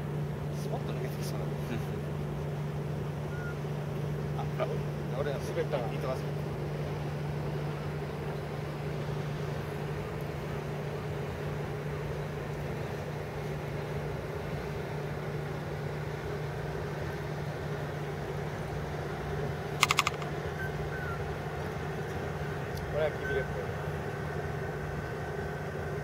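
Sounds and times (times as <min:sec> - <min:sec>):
sharp clicks: 0:19.8 - 0:20.3.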